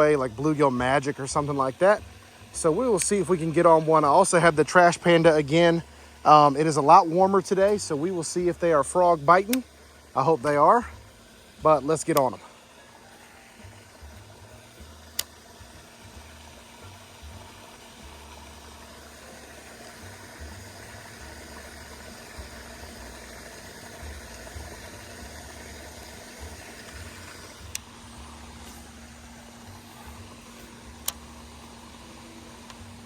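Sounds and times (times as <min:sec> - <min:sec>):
background hiss: 0:00.0 - 0:33.0
faint steady hum: 0:00.0 - 0:33.0
sharp clicks: 0:31.0 - 0:31.3.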